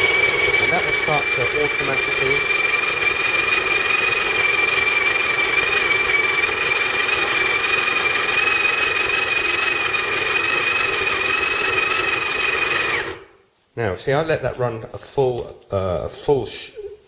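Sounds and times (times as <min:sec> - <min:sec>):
coffee grinder whining: 0:00.0 - 0:13.3.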